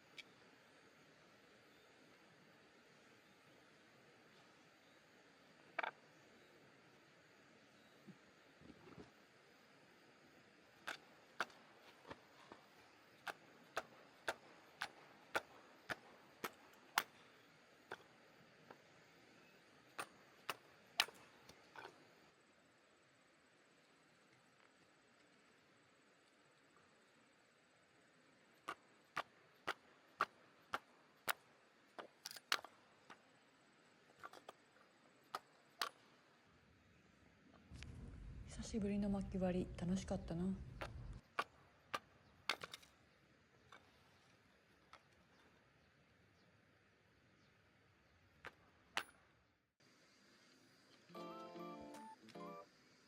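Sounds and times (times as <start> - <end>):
firewood splitting strikes: 10.8 - 12.6, 13.2 - 17.3.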